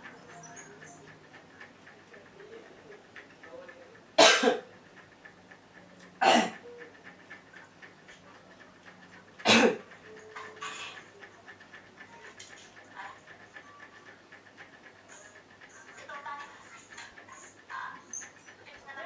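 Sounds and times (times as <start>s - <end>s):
person coughing hard: 4.2s - 4.7s, 6.2s - 6.6s, 9.4s - 9.8s
soft raspy cough: 4.2s - 4.7s, 6.2s - 6.6s, 9.4s - 9.8s.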